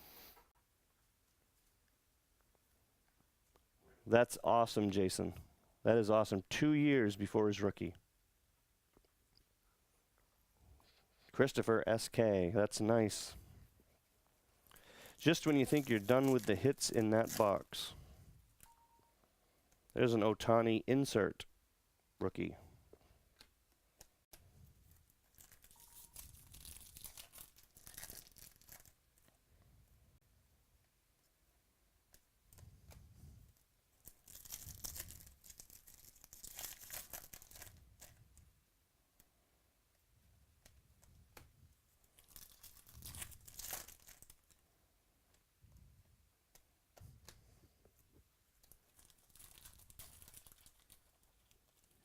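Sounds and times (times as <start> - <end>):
foil wrapper tearing and crinkling: 15.2 - 17.8, 25.2 - 29.0, 34.0 - 38.2, 42.1 - 44.6, 48.6 - 52.0.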